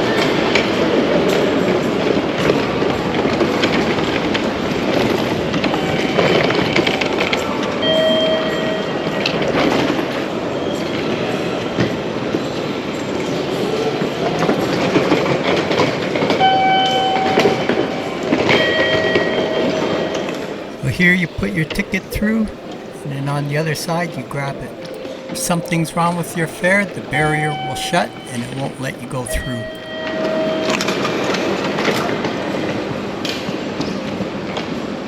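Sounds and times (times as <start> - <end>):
short electronic beeps: 20.8 - 30.0.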